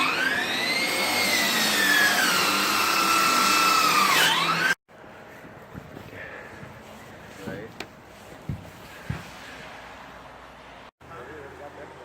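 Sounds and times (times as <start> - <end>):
power tool motor whining: 0.0 - 4.8.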